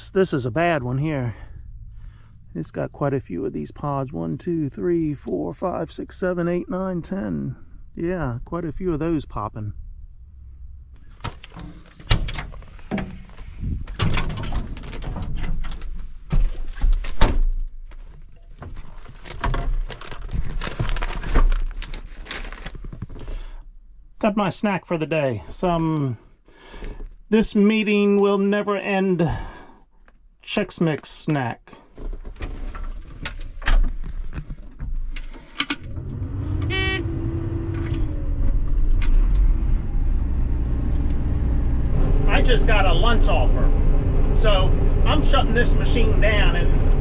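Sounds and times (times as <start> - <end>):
low rumble bursts: 0.0 - 14.9, 38.3 - 47.0
sharp clicks and rattles: 11.0 - 23.2
handling knocks and thumps: 11.2 - 23.2
combine harvester engine running: 35.8 - 47.0
short electronic beep: 36.7 - 37.1.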